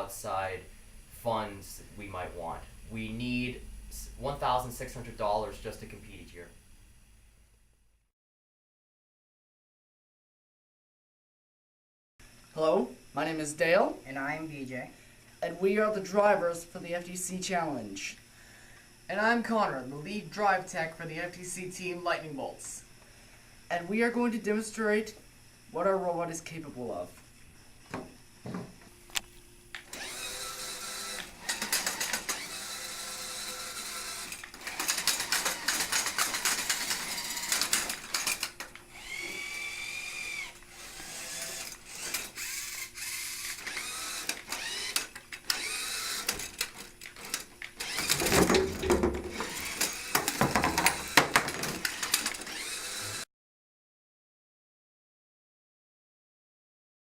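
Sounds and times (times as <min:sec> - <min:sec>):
robot electric motors whining: 0:29.8 - 0:53.3
gears running: 0:29.9 - 0:53.2.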